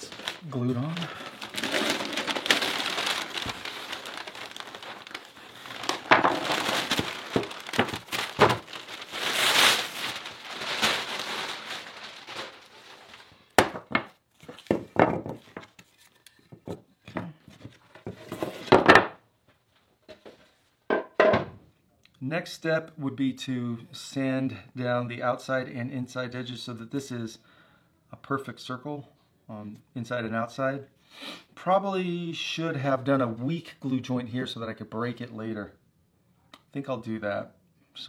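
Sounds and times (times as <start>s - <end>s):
material rustling and crinkling: 0.0s - 16.2s.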